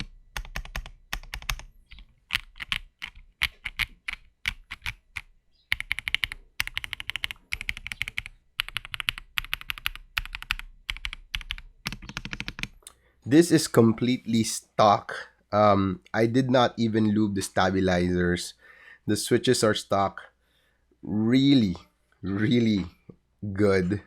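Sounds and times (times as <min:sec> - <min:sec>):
mechanical keyboard typing: 0:00.0 - 0:01.7, 0:02.3 - 0:12.8.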